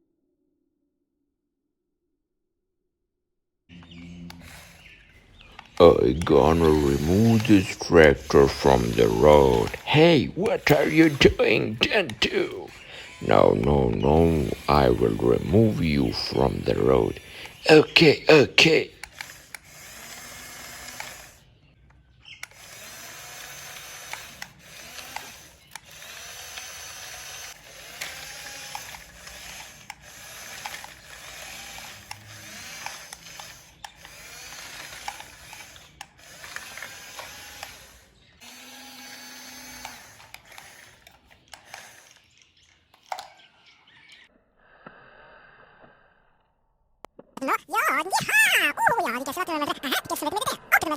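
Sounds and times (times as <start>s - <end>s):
small electric motors whirring: 3.7s - 44.2s.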